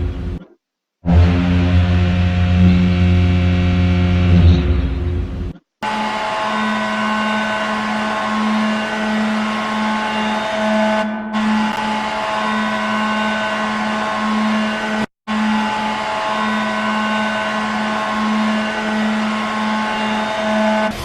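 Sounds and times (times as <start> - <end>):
deep loud horn: 1.0 - 5.2, 5.8 - 21.0
higher goal horn blast: 5.8 - 21.0.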